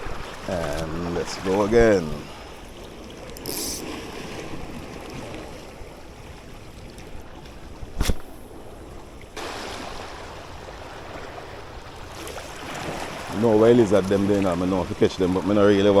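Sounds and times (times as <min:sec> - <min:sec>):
sea water washing against rocks: 0:00.0 - 0:16.0
brief high hiss: 0:03.4 - 0:03.9.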